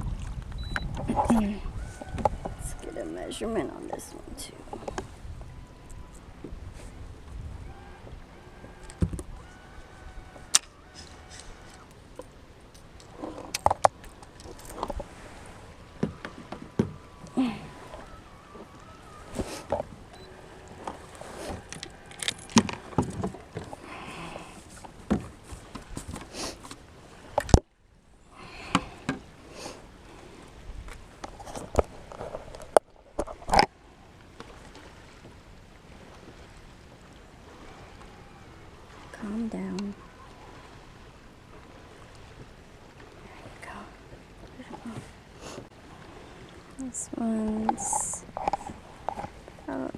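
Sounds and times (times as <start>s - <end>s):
fishing gear knocks and clicks: 10.5s - 15.1s, 20.8s - 23.8s, 24.7s - 26.8s, 31.2s - 33.7s, 47.6s - 49.4s.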